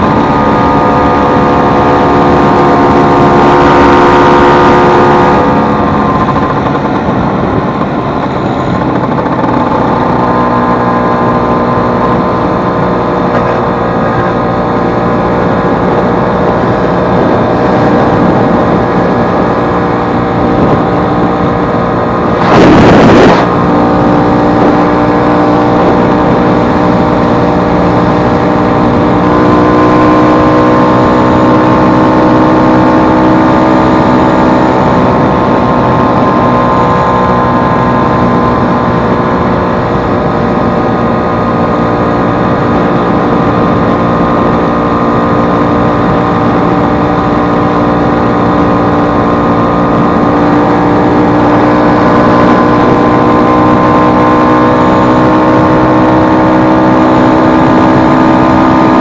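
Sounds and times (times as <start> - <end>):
scooter engine running: 0.0 - 59.0
loud burst of noise: 22.3 - 23.5.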